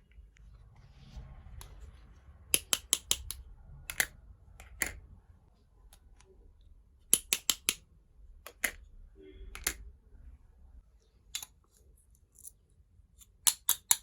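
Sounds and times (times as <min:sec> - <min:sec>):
toy kitchen pieces clicking: 0:02.6 - 0:05.0, 0:07.1 - 0:07.8, 0:08.4 - 0:08.8, 0:09.4 - 0:09.9, 0:11.3 - 0:12.6, 0:13.2 - 0:14.0.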